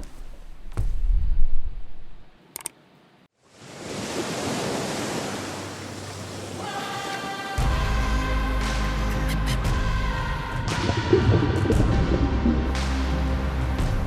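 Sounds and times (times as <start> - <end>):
rushing water like surf: 3.4 - 8.8, 10.6 - 13.5
low rumble: 10.6 - 13.6.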